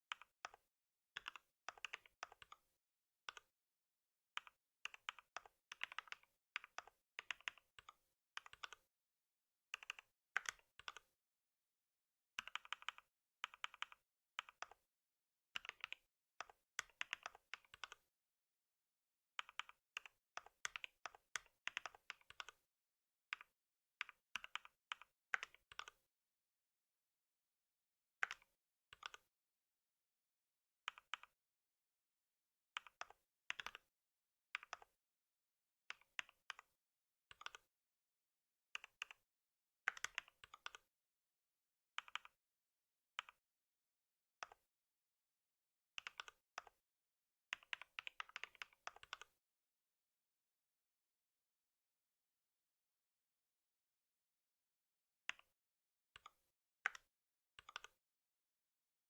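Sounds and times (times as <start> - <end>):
typing on a computer keyboard: 0.1 - 0.6, 1.2 - 2.6, 3.3 - 3.5, 4.4 - 8.8, 12.4 - 14.8, 15.6 - 18.0, 19.4 - 22.6, 23.3 - 26.0, 32.8 - 33.9, 34.6 - 34.9, 39.9 - 40.9, 47.5 - 49.4, 56.2 - 58.0.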